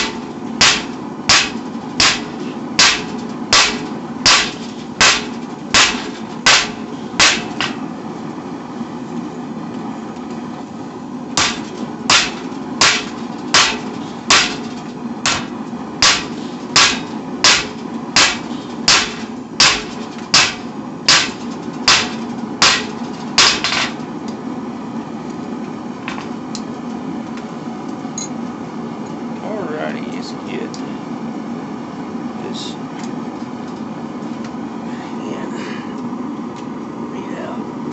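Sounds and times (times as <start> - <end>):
hammer striking steel on anvil: 0.0 - 7.8, 11.4 - 14.6, 15.2 - 24.0
forge humming: 0.0 - 37.9.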